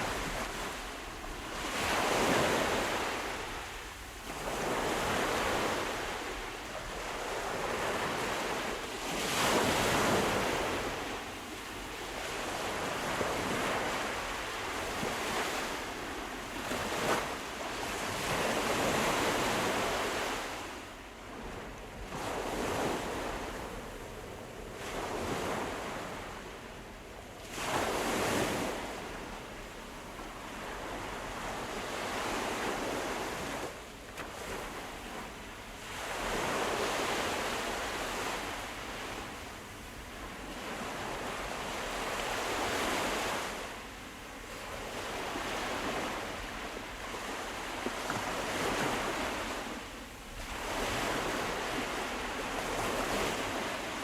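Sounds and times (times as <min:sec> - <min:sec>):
sea waves breaking on shore: 0:00.0 - 0:54.0.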